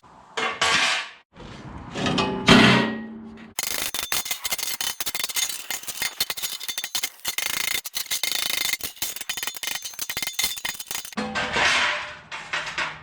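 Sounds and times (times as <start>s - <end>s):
metal scraping and rasping: 3.5s - 13.0s.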